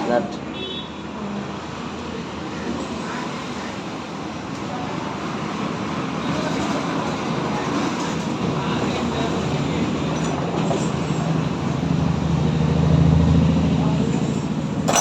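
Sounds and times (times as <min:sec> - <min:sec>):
road traffic noise: 0:00.0 - 0:15.0.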